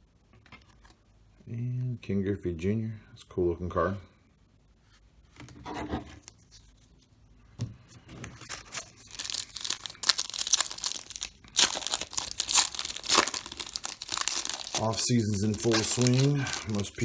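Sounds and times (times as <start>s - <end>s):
plastic wrapper tearing and crinkling: 8.4s - 17.0s.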